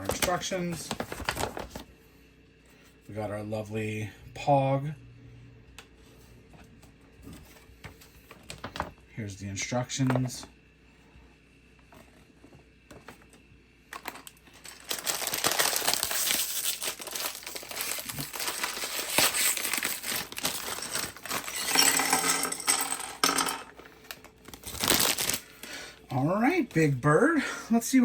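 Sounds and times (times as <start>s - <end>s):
packaging crinkled and torn: 0.0s - 1.8s, 14.0s - 21.6s, 24.1s - 25.7s.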